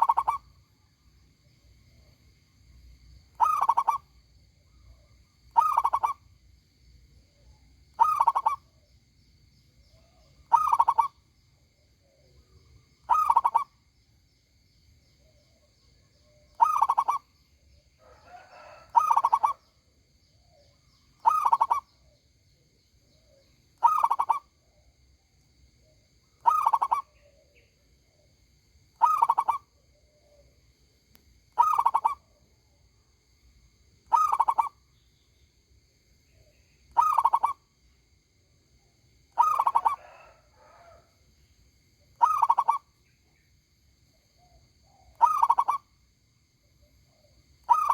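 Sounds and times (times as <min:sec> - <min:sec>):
dove cooing: 0:00.0 - 0:00.4, 0:03.4 - 0:04.0, 0:05.6 - 0:06.2, 0:08.0 - 0:08.6, 0:10.5 - 0:11.1, 0:13.1 - 0:13.6, 0:16.6 - 0:17.2, 0:18.0 - 0:19.6, 0:21.2 - 0:21.8, 0:23.8 - 0:24.4, 0:26.4 - 0:27.5, 0:29.0 - 0:30.4, 0:31.6 - 0:32.2, 0:34.1 - 0:34.7, 0:37.0 - 0:37.5, 0:39.4 - 0:41.0, 0:42.2 - 0:42.8, 0:44.4 - 0:45.8, 0:47.7 - 0:47.9
faint high-pitched whine: 0:00.0 - 0:47.9.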